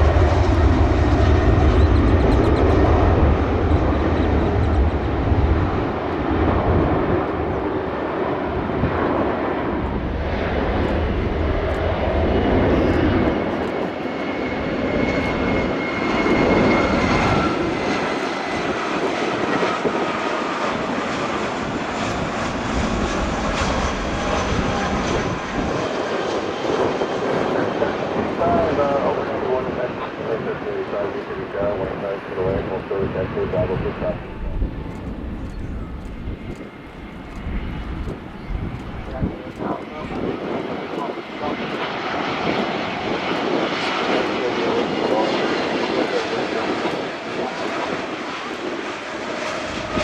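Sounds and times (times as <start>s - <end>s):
jet engines roaring: 0.0s - 50.0s
low rumble: 31.1s - 39.9s.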